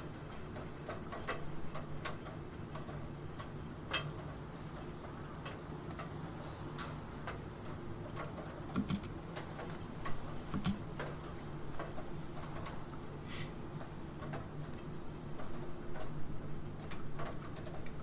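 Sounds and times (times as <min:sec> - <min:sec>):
keyboard typing clicks: 0:08.7 - 0:09.1, 0:10.5 - 0:10.8
rain hiss: 0:13.1 - 0:13.7.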